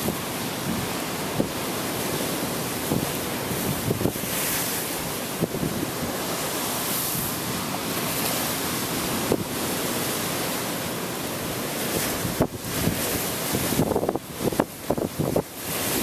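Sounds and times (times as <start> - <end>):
waves breaking on shore: 0.0 - 16.0
wind: 0.0 - 16.0
wind buffeting microphone: 2.7 - 4.4, 5.2 - 6.4, 11.8 - 16.0.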